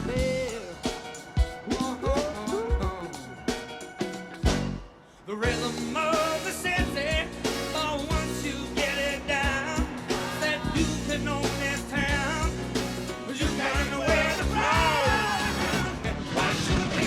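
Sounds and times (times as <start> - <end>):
rock and roll song with singing: 0.0 - 17.0.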